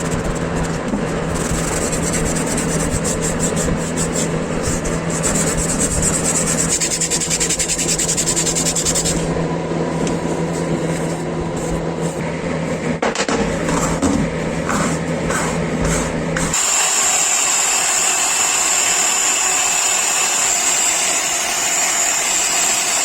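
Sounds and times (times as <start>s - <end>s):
sanding rubbing noise: 0.0s - 9.3s, 13.7s - 16.8s
motor tool humming: 16.4s - 23.0s.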